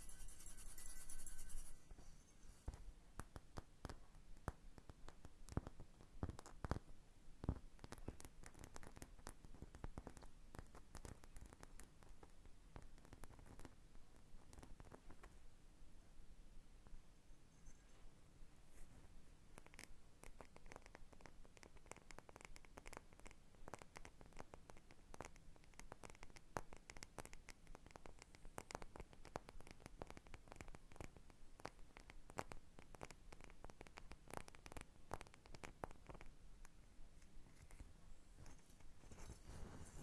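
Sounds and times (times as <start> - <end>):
hands scratching an object: 0.0 - 2.7.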